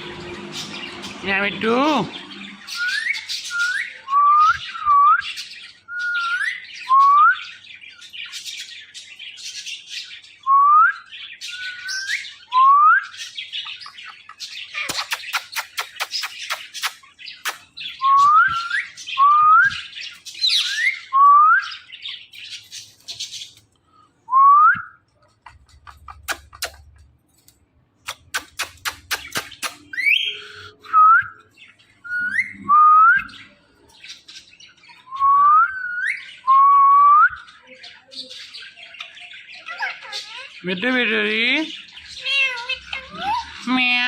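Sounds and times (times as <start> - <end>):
parrot whistling: 2.6 - 5.3, 32.0 - 33.6, 34.9 - 37.4.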